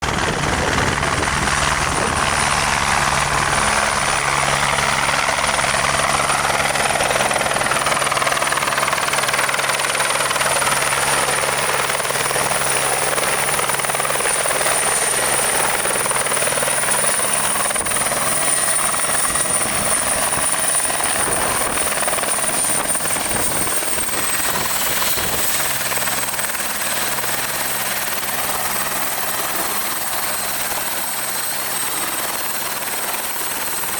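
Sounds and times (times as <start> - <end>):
helicopter turbine whine: 0.0 - 33.9.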